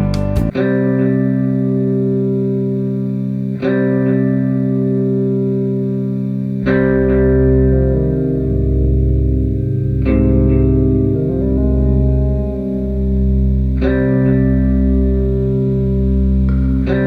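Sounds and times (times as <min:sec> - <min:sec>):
deep bass: 0:00.0 - 0:00.6, 0:06.7 - 0:17.0
guitar-like chords with effects: 0:00.0 - 0:17.0.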